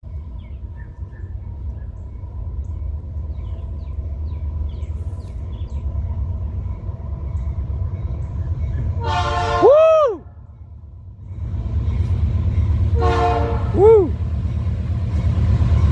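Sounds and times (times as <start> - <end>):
diesel locomotive rumbling: 0.0 - 15.9
locomotive air horn chord: 9.0 - 10.4, 12.9 - 14.0.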